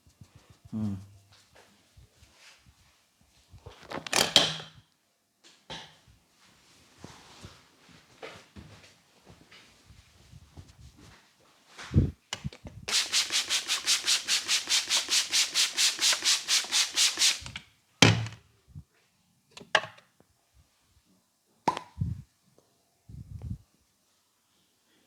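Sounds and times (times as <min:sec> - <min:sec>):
rhythmic rubbing on head: 0:12.9 - 0:17.5.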